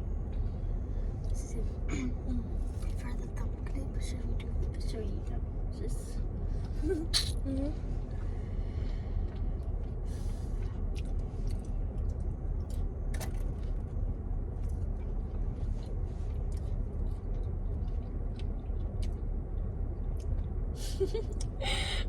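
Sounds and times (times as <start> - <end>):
low rumble inside car cabin: 0.0 - 22.0
people eating chicken wings: 6.6 - 12.9.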